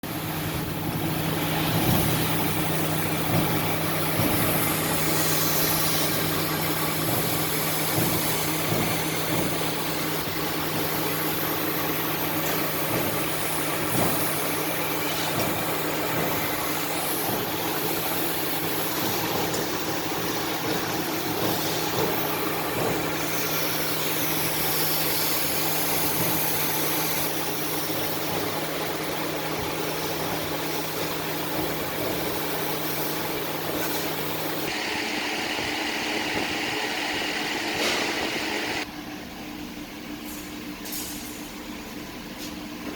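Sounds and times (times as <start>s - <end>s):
laser cutter hum and hiss: 0.0s - 38.9s
drive motors whining: 34.6s - 38.9s.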